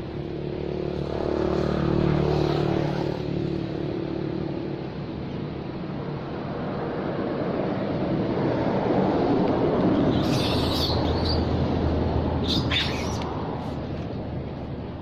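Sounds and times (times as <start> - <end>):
vehicle engine passing: 0.0 - 5.2.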